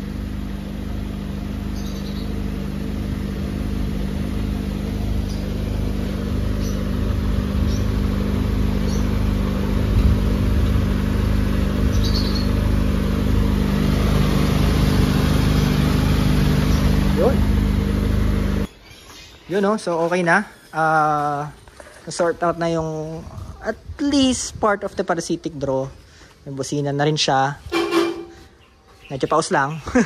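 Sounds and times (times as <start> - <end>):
car engine idling: 0.0 - 18.7, 27.7 - 28.6
cooling fan rushing: 0.0 - 18.7.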